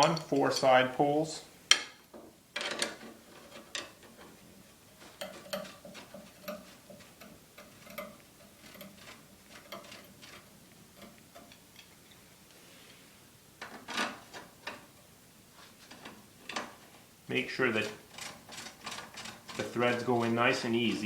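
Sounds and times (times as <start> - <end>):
metal poles clicking and clinking: 0.0 - 1.0, 5.0 - 12.0, 17.6 - 21.0.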